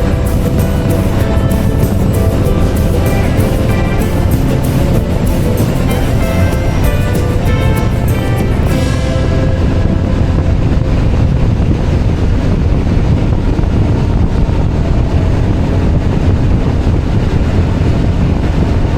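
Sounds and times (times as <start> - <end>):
scooter engine running: 0.0 - 12.4
wind rush on microphone: 0.0 - 18.9.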